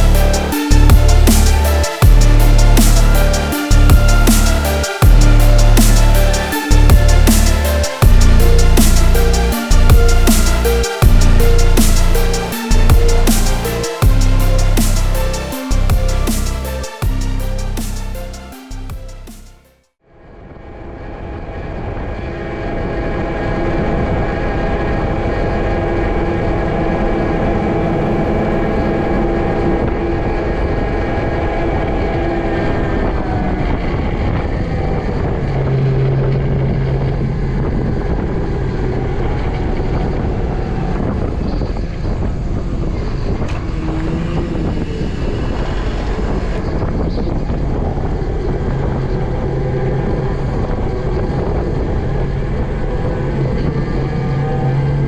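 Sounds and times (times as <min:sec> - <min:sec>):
vehicle engine running: 0:00.0 - 0:19.4.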